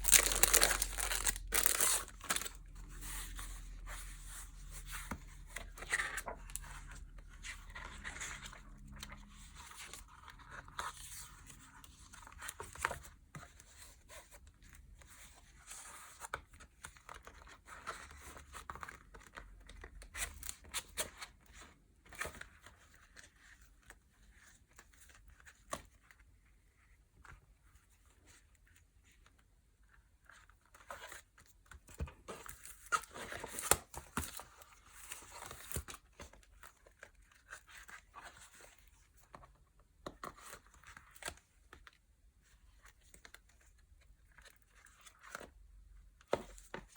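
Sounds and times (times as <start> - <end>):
packaging crinkling and rustling: 0.0 - 3.0.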